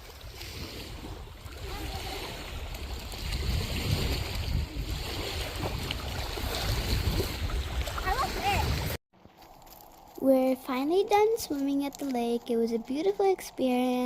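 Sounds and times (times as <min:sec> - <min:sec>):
lapping lake water: 0:00.0 - 0:14.0
wind buffeting microphone: 0:00.2 - 0:09.0.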